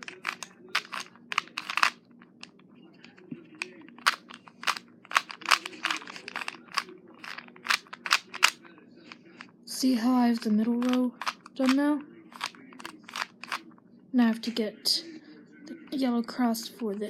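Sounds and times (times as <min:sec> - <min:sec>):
puzzle cube layers clicking: 0:00.0 - 0:02.0, 0:04.0 - 0:08.6, 0:10.8 - 0:13.6.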